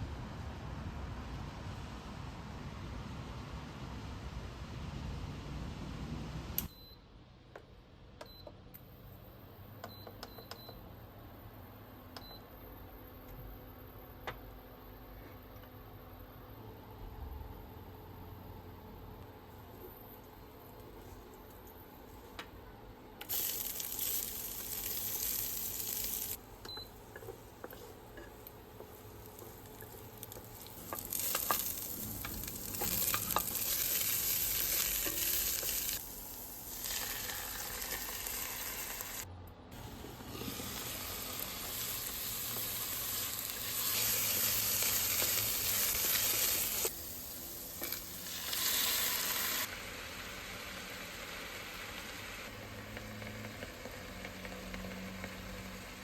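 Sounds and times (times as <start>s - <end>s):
spinach sizzling in a pan: 23.3s - 26.4s, 28.8s - 39.2s, 39.8s - 56.0s.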